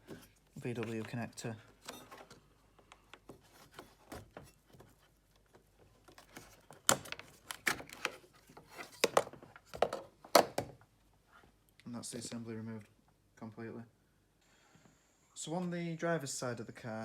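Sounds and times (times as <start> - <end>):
sharp plastic knocks: 6.7 - 8.1, 9.0 - 10.8.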